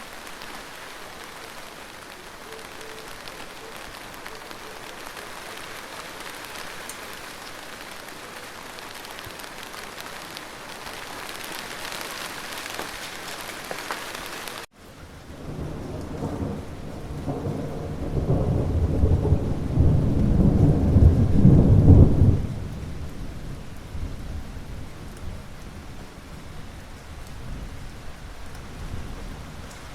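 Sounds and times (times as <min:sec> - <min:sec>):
steady rain hiss: 0:00.0 - 0:29.9
low thunder rumble: 0:15.3 - 0:26.6.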